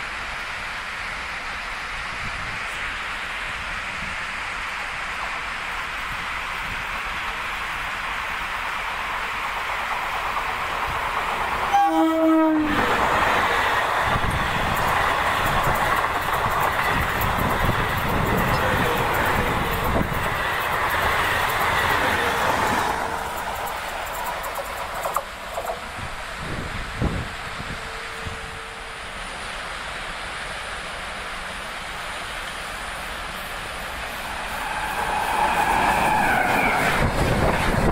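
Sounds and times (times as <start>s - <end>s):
train rushing past: 0.0s - 37.9s
train horn: 11.7s - 13.0s, 27.5s - 29.1s
wheels clicking over rails: 12.9s - 26.0s.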